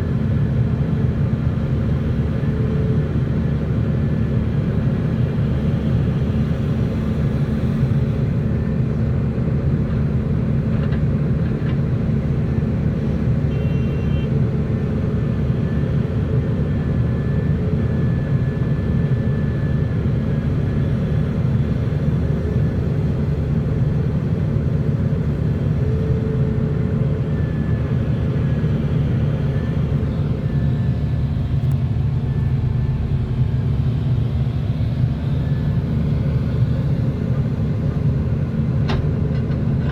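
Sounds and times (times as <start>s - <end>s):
heavy machinery engine rumbling: 20.4s - 39.9s.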